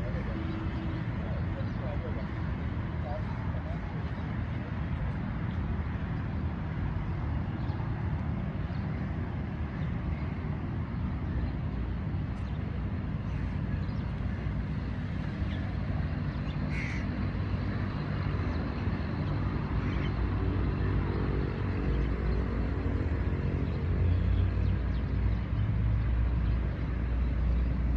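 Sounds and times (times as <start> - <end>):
crows cawing: 16.7 - 17.1.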